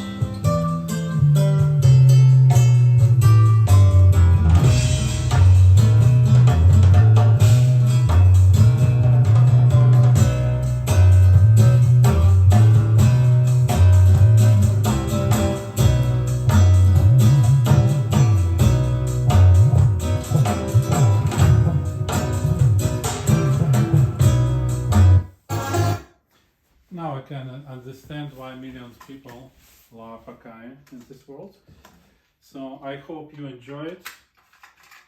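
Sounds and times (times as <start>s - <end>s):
walking bass line: 0.0s - 26.0s
song from a cassette: 0.0s - 26.1s
guitar: 0.0s - 26.2s
steady drum beat: 1.6s - 26.0s.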